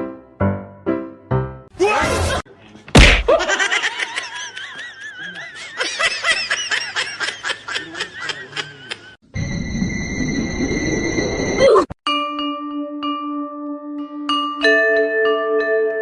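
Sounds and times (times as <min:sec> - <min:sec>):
loud hit: 0:03.0 - 0:03.4.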